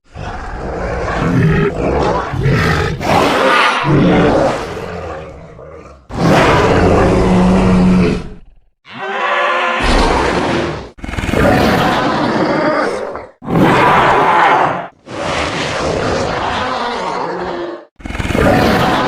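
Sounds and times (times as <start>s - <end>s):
creature roars and growls: 0.0s - 19.0s.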